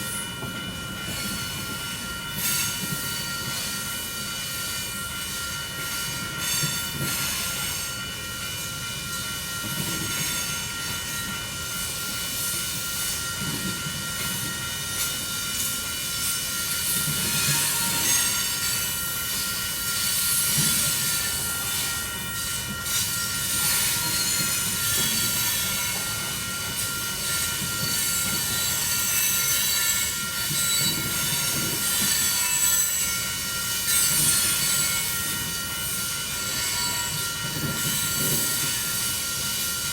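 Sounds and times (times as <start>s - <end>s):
train wheels rolling on rails: 0.0s - 39.9s
high squealing wheels: 9.4s - 39.9s.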